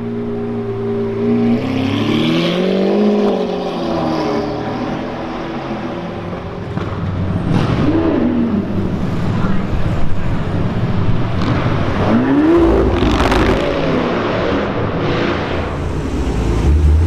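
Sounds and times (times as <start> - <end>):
sports car engine: 0.0 - 17.0.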